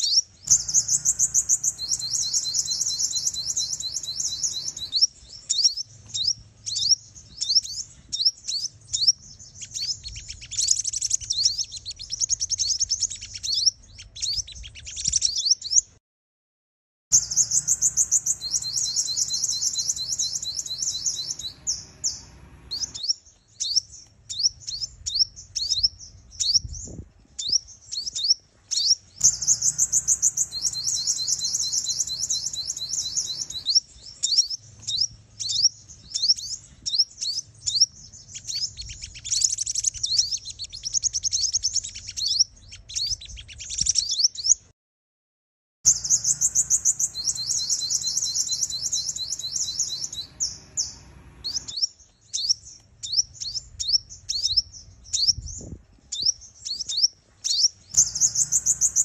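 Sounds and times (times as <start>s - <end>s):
sunbird chirping and trilling: 0.0s - 16.0s, 17.1s - 44.7s, 45.9s - 59.0s.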